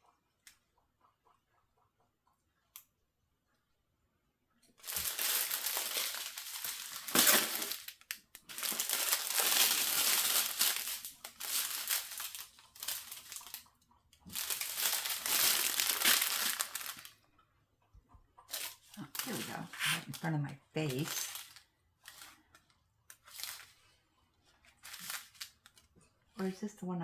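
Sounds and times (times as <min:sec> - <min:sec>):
plastic packaging crinkling: 0:04.8 - 0:13.7, 0:14.3 - 0:17.2, 0:18.5 - 0:22.5, 0:23.1 - 0:23.9, 0:24.7 - 0:25.9.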